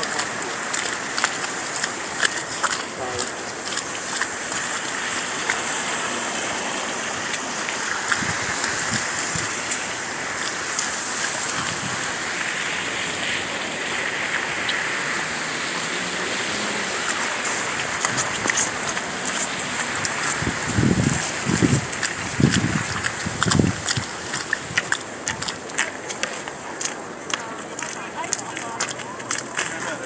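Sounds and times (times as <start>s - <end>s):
snowy street ambience: 0.0s - 30.0s
wind: 0.0s - 30.0s.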